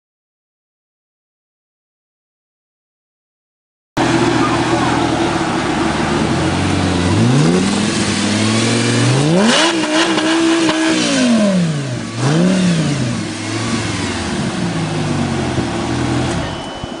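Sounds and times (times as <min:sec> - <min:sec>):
car engine revving: 0:04.0 - 0:16.5.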